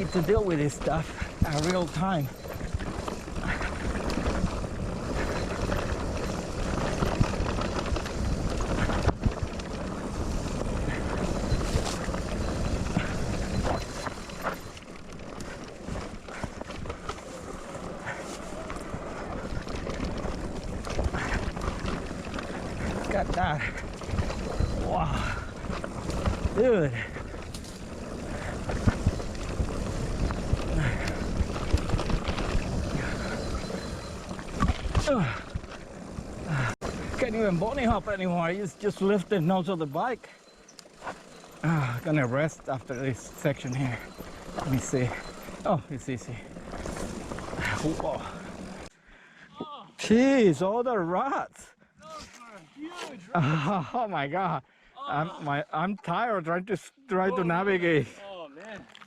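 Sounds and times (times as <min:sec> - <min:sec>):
bike rattling over bumps: 0:00.0 - 0:48.9
bike tyres rumbling on dirt: 0:00.0 - 0:48.9.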